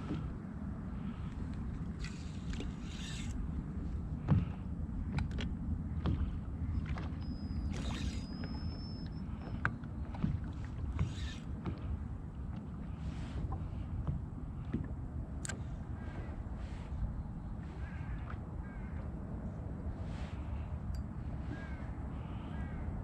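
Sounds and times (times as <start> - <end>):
knocks and thumps in boat: 0.0 - 0.5, 1.2 - 17.0
wind and water rumble: 0.0 - 23.0.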